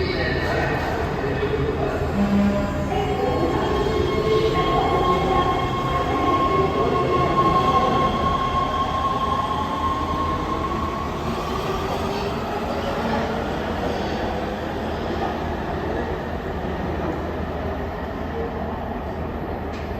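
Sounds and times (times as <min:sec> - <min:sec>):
subway train rumble: 0:00.0 - 0:19.9
high steady tone: 0:02.1 - 0:11.1.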